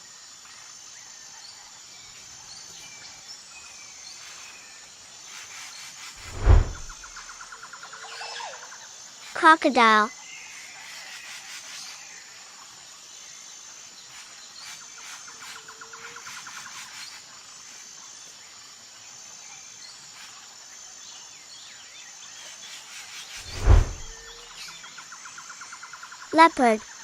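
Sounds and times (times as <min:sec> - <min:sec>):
short loud deep thud: 0:06.2 - 0:07.1.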